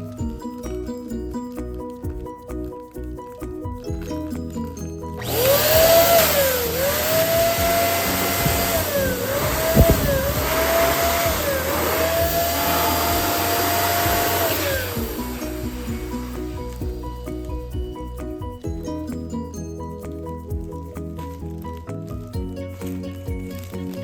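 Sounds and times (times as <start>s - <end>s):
rushing air: 5.2s - 16.9s
electric pump motor whine: 5.2s - 17.0s.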